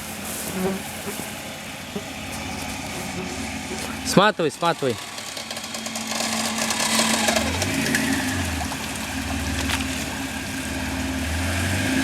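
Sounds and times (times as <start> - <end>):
constant hiss: 0.0 - 5.6
engine running steadily: 0.0 - 12.0.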